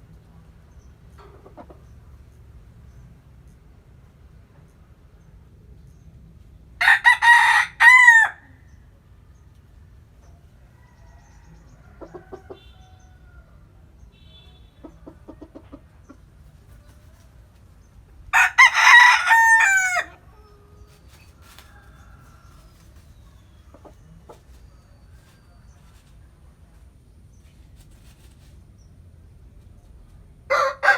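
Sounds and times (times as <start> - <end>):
faint chicken clucks: 0.0 - 3.8, 7.0 - 30.9
rooster crowing: 6.8 - 8.5, 10.7 - 13.6, 18.3 - 20.5, 30.5 - 30.9.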